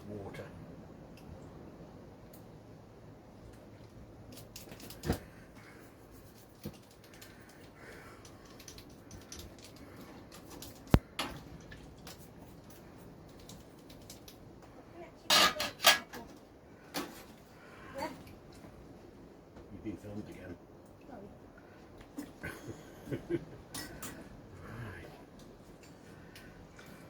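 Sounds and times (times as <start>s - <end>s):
small metal parts clicking: 6.6s - 14.4s.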